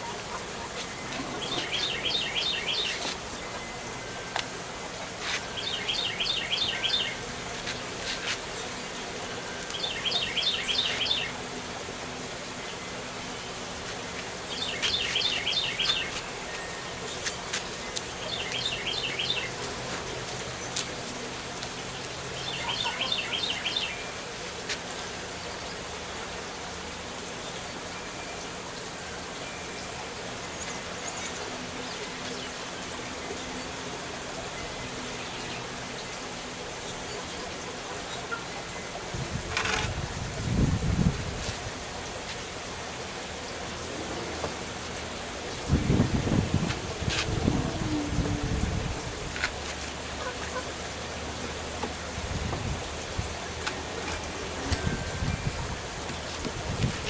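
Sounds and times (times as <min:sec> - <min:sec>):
background hiss: 0:00.0 - 0:57.0
songbird trilling: 0:00.9 - 0:03.8, 0:05.6 - 0:07.3, 0:09.6 - 0:11.4, 0:14.5 - 0:16.8, 0:18.1 - 0:19.6, 0:22.4 - 0:24.1.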